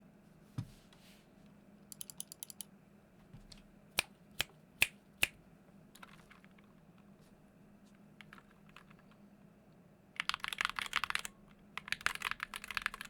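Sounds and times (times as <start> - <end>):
keyboard key presses: 1.9 - 2.6, 8.2 - 9.1, 10.2 - 13.0.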